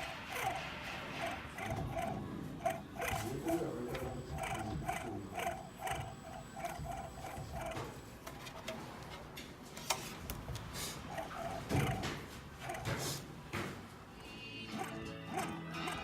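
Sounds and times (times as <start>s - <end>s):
fan motor rhythmic squealing: 0.0s - 8.5s, 11.0s - 13.3s, 14.1s - 16.0s.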